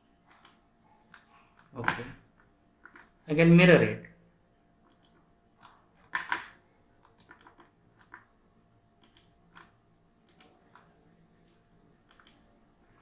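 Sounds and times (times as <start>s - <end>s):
mouse and keyboard clicks: 2.8s - 3.1s, 4.9s - 8.3s, 9.0s - 10.9s, 12.1s - 12.4s.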